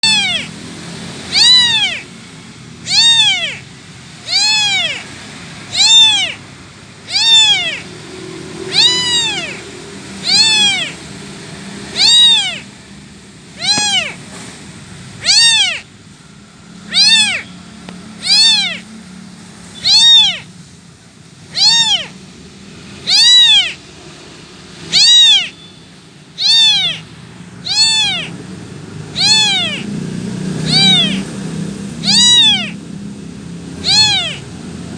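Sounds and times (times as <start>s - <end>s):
kitten meowing: 0.0s - 2.2s, 2.8s - 8.0s, 8.6s - 11.1s, 11.8s - 12.8s, 13.5s - 14.4s, 15.2s - 16.0s, 16.8s - 19.0s, 19.7s - 20.6s, 21.4s - 22.3s, 22.9s - 24.2s, 24.8s - 28.5s, 29.1s - 32.9s, 33.7s - 34.7s.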